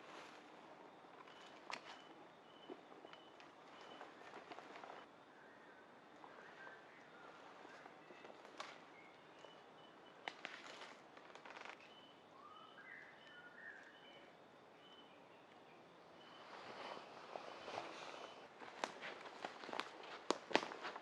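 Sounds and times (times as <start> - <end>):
branches and leaves rustling: 0.0 - 5.1, 6.2 - 14.0, 16.2 - 21.0
bird chirping: 1.0 - 10.4, 11.7 - 17.0
branch snapping: 10.3 - 11.9.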